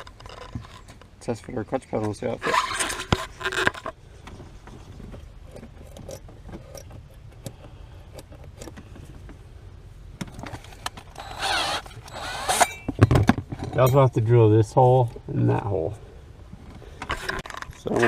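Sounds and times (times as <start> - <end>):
metal clinks and scraping: 0.0 - 1.0, 10.6 - 14.2.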